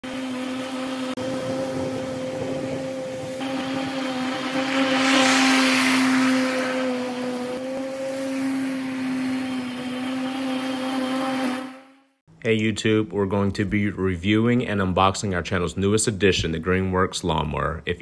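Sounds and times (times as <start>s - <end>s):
motor hum: 0.0s - 12.2s.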